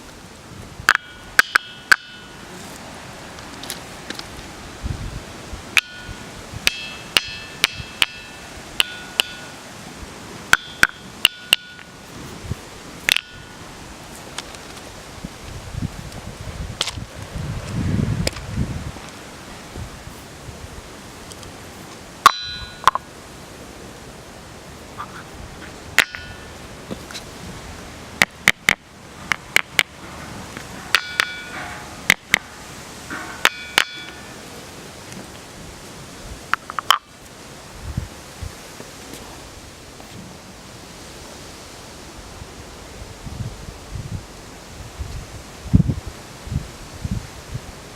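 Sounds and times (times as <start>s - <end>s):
stone striking ringing boulder: 0.9s - 2.4s, 5.8s - 9.6s, 10.5s - 11.9s, 13.1s - 13.6s, 22.2s - 23.1s, 26.0s - 26.5s, 30.9s - 32.5s, 33.1s - 34.4s
stone striking boulder: 13.1s - 13.4s.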